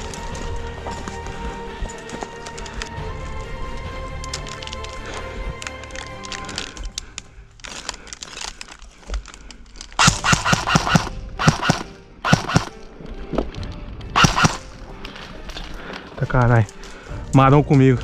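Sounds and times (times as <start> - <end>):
faint background music: 0.0 - 8.5, 10.0 - 18.0
sharp cracks and clicks: 5.6 - 12.9, 14.2 - 15.2.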